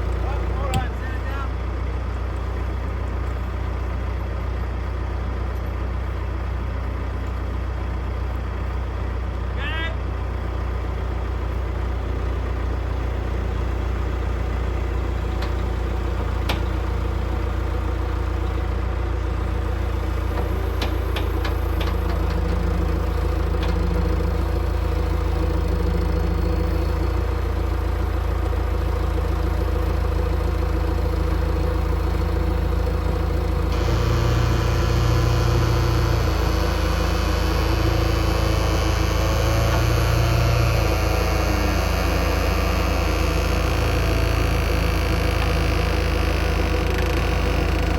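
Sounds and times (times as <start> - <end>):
vehicle engine rumbling: 0.0 - 47.9.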